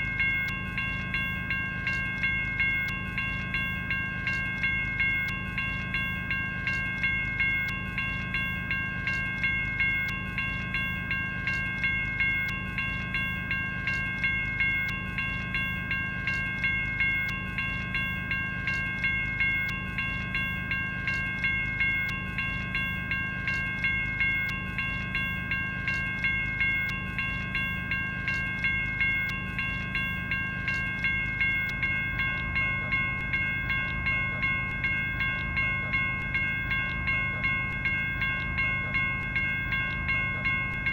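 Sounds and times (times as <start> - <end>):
electronic crossing bell ringing: 0.0 - 40.9.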